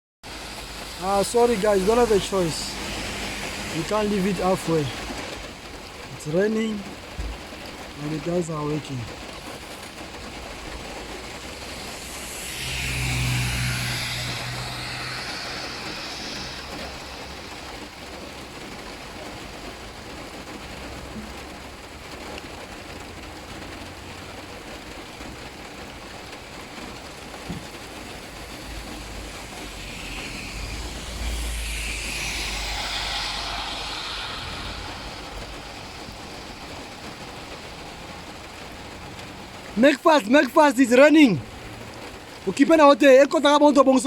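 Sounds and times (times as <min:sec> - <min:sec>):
low rumble: 0:00.2 - 0:06.2, 0:09.0 - 0:21.8, 0:25.0 - 0:39.8
rain falling: 0:00.2 - 0:44.0.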